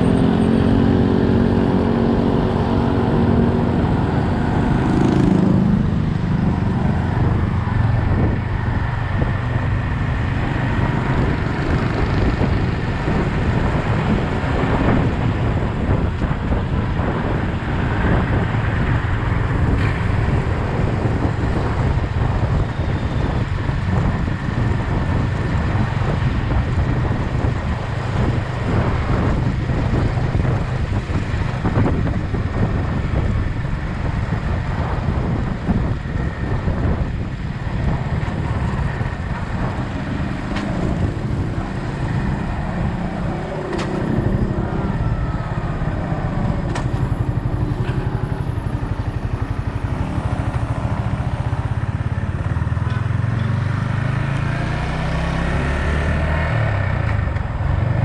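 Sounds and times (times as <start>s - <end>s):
motorcycle engine rumbling: 0.0s - 55.4s.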